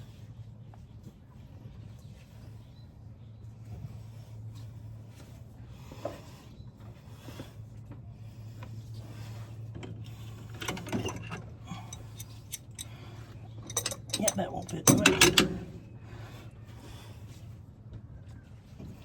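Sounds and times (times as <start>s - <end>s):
steady low hum: 0.0s - 19.0s
hand tools clicking and clinking: 10.6s - 13.0s, 13.6s - 15.6s.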